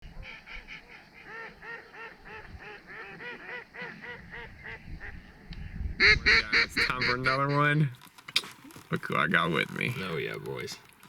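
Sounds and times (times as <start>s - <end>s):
waterfowl flock calling: 0.2s - 7.9s.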